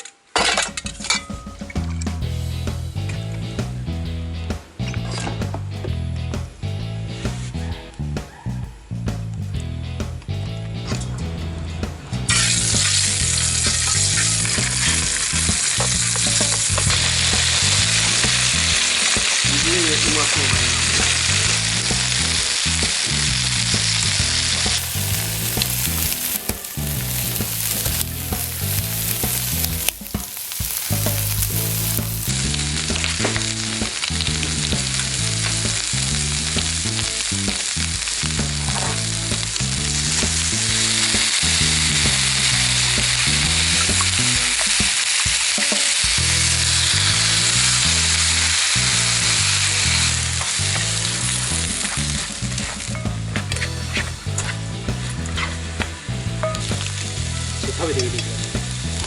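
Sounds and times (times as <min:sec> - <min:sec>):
background music: 0:09.6 - 0:37.4, 0:45.8 - 0:59.0
food sizzling in a pan: 0:23.7 - 0:34.0.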